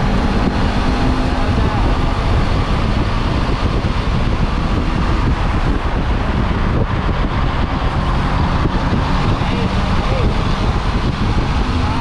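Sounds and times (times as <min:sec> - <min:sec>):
motorcycle engine: 0:00.0 - 0:12.0
road noise: 0:00.0 - 0:12.0
wind buffeting microphone: 0:00.0 - 0:12.0.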